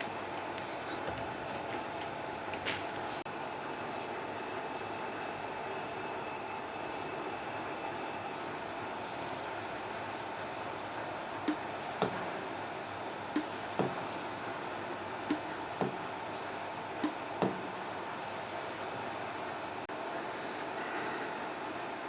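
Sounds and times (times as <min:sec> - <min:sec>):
sharp knocks: 0:13.4 - 0:14.1, 0:15.3 - 0:16.1, 0:17.0 - 0:17.7.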